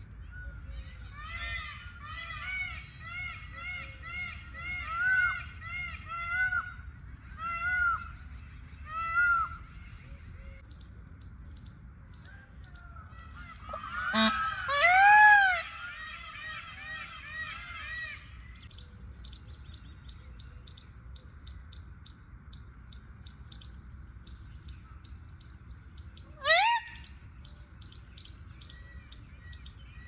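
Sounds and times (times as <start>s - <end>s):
peafowl honking calls: 13.2s - 18.4s, 26.3s - 27.1s.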